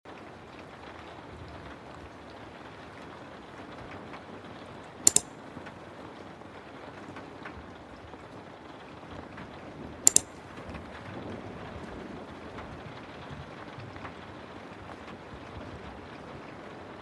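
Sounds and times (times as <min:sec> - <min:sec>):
sharp double click: 0:05.1 - 0:05.3, 0:10.1 - 0:10.4.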